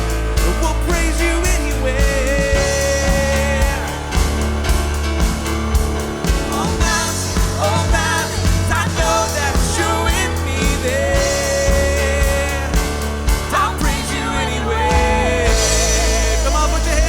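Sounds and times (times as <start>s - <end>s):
drums: 0.0s - 17.0s
worship band playing: 0.0s - 17.0s.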